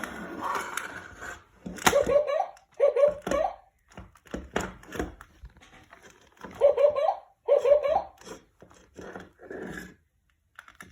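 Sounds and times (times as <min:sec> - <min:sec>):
toy electronic voice giggling: 0:01.8 - 0:03.7, 0:06.5 - 0:08.2.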